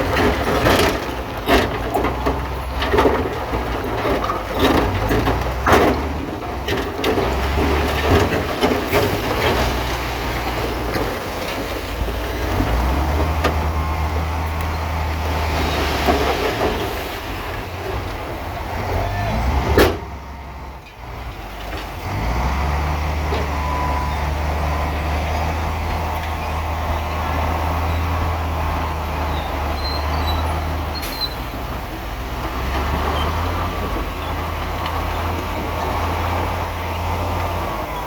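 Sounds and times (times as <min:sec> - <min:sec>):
heavy machinery diesel engine: 0:00.0 - 0:38.0.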